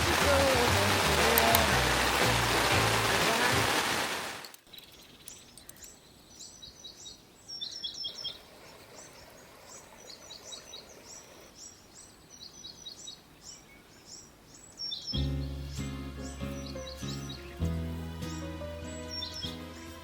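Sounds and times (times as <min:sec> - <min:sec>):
music: 0:00.0 - 0:03.9, 0:15.2 - 0:20.0
songbirds chirping: 0:04.4 - 0:20.0.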